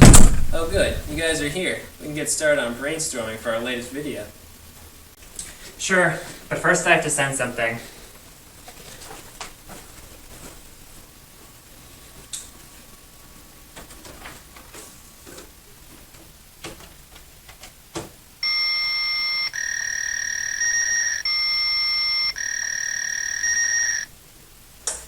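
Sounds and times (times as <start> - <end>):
fax handshake tones: 18.4 - 24.1
fax machine clicks: 18.4 - 24.1.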